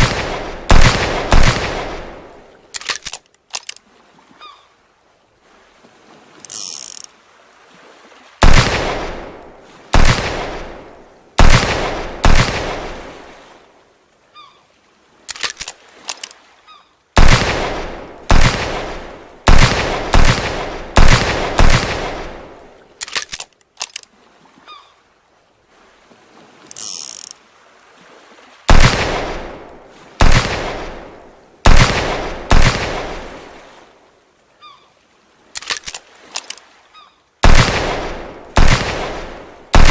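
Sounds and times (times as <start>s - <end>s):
revolver gunshots echoing: 0.0s - 2.4s, 8.4s - 10.8s, 11.4s - 13.0s, 17.2s - 22.6s, 28.7s - 33.3s, 37.4s - 39.9s
small metallic clicks: 2.7s - 3.8s, 6.4s - 7.1s, 15.3s - 16.4s, 23.0s - 24.1s, 26.7s - 27.4s, 35.6s - 36.6s.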